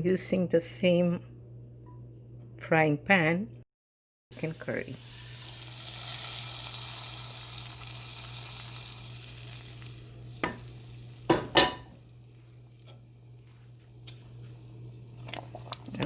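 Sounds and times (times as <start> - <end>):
food sizzling in frying pan: 4.4 - 15.6.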